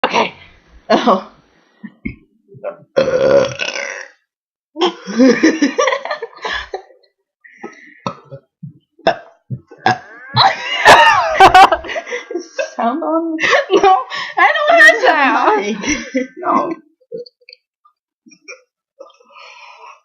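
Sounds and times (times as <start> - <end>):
girl burping loudly: 2.6 - 5.0, 8.0 - 11.7.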